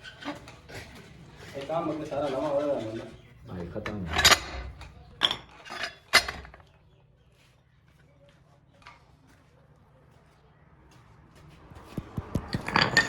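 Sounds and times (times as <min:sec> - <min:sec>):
metal tools clinking: 0:03.7 - 0:06.7, 0:12.5 - 0:13.0.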